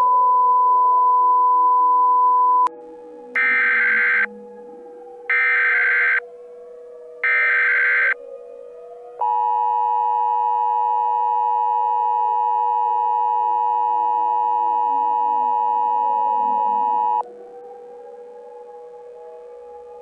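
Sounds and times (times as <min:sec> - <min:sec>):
steady hum: 0:03.4 - 0:04.3
two high alert tones: 0:03.4 - 0:04.3
falling and rising pitch sweeps: 0:03.4 - 0:04.4.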